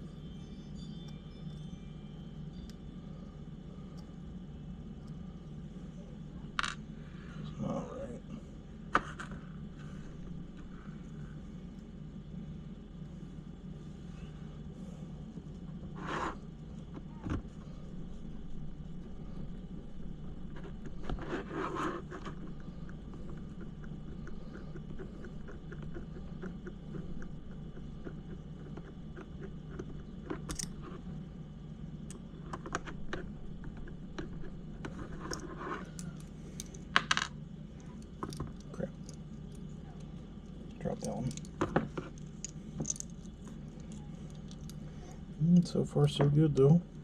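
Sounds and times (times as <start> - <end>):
steady low hum: 0.0 - 47.0
screws and driver clicking: 30.5 - 30.8.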